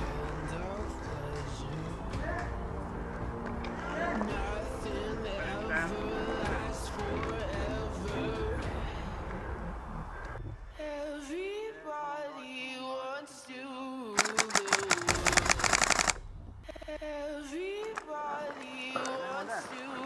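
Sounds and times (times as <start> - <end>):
woman singing slow song: 4.2 - 9.4, 10.7 - 15.6, 16.6 - 20.0
rapid airsoft rifle fire: 14.2 - 16.2.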